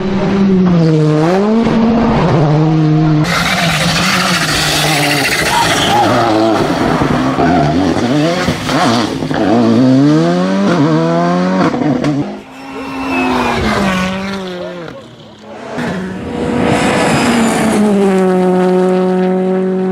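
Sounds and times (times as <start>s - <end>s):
rally car engines revving: 0.0s - 19.9s
car passing by: 11.5s - 19.5s.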